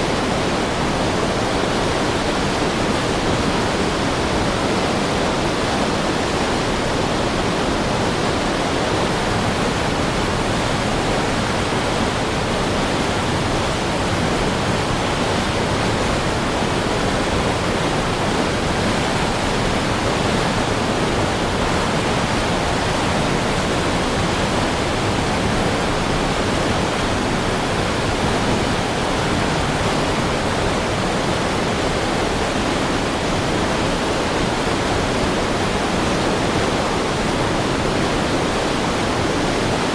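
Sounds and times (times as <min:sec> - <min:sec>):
river rushing: 0:00.0 - 0:39.9.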